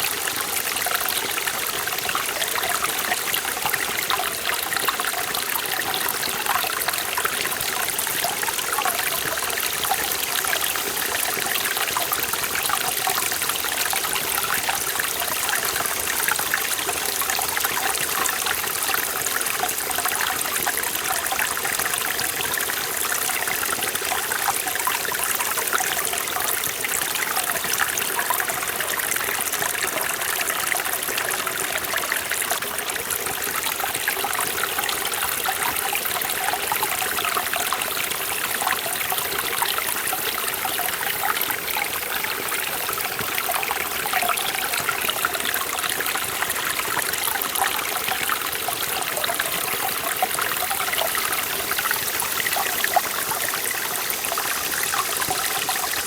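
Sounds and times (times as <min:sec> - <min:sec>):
stream water splashing over rocks: 0:00.0 - 0:56.0.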